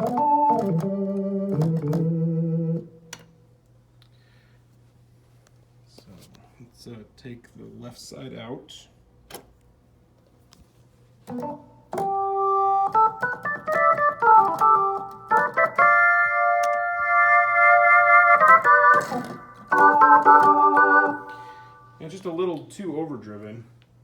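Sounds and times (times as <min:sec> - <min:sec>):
organ chords: 0:00.0 - 0:03.2, 0:11.2 - 0:22.0.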